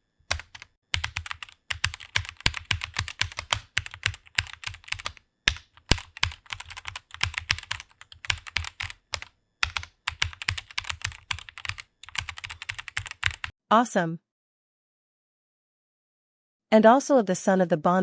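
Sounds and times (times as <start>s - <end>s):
keyboard typing: 0.3s - 13.5s.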